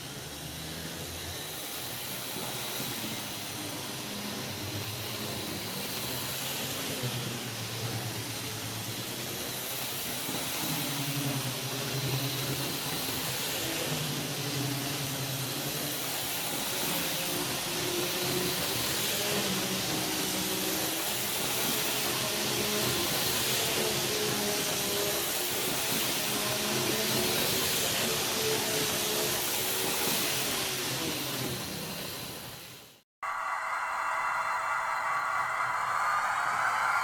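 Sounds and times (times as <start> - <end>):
model train motor and wheels hissing: 0.0 - 37.0
faint hum: 33.2 - 37.0.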